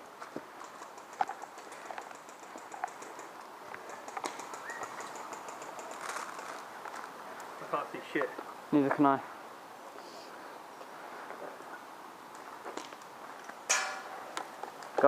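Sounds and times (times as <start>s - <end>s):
distant airsoft gun clicks: 0.6s - 6.4s
bird chirp: 2.6s - 6.0s.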